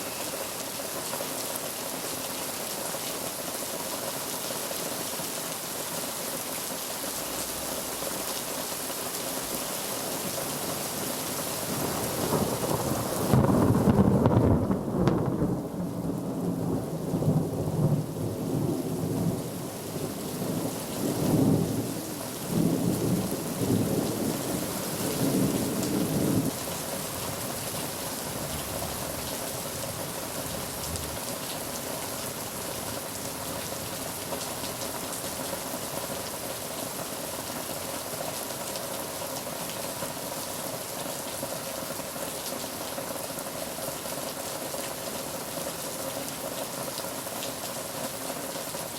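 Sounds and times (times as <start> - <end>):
heavy rain: 0.0 - 48.9
thunder rumbling: 12.1 - 19.5.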